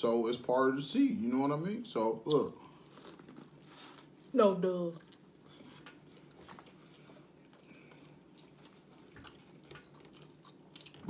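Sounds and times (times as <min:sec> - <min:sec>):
faint chewing: 0:02.2 - 0:11.0.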